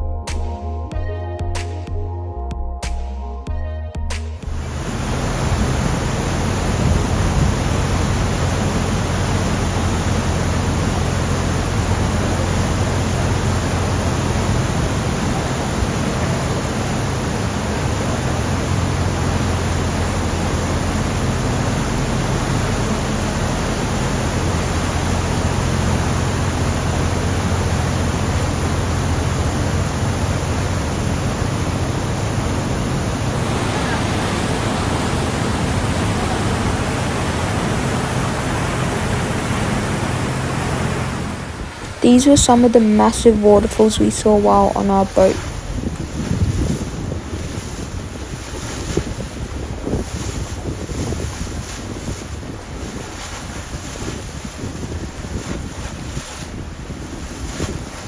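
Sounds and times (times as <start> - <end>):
waterfall rushing: 4.6 - 45.8.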